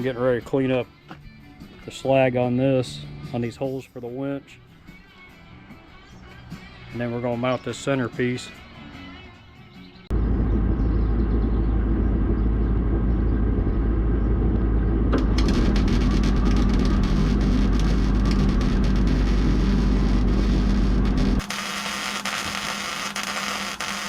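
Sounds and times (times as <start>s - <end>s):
power grinder grinding steel: 15.2s - 24.0s.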